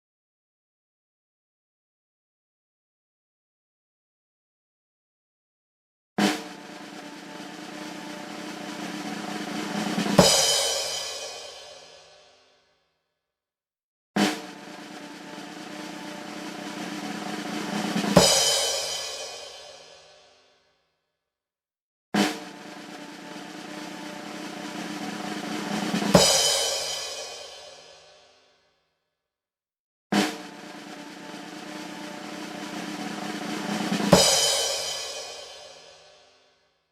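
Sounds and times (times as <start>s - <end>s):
cymbal and bass drum crash: 6.2s - 12.3s, 14.2s - 20.3s, 22.2s - 28.2s, 30.2s - 36.3s
drum roll: 6.2s - 12.4s, 14.2s - 20.3s, 22.2s - 28.3s, 30.2s - 36.4s.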